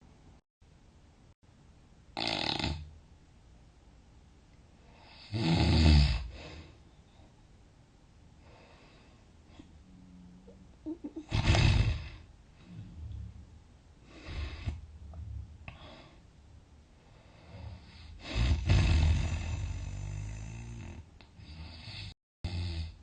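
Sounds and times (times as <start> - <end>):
person snoring loudly: 2.2 - 2.9, 5.1 - 6.5, 11.2 - 13.3, 17.5 - 23.0
faint breathing: 8.4 - 10.0, 11.4 - 13.4, 14.0 - 18.6.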